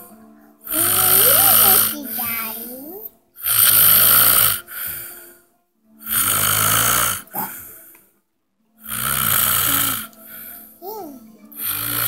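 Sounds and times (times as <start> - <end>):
man snoring loudly: 0.7 - 2.2, 3.4 - 5.0, 6.0 - 7.7, 8.8 - 10.2, 11.5 - 12.0
soft breath: 4.5 - 6.2, 9.5 - 12.0.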